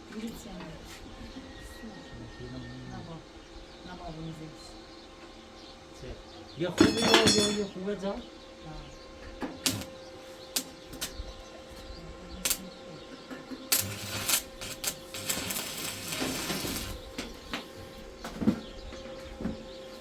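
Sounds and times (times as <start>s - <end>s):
dishes and glasses clinking: 6.8s - 7.7s.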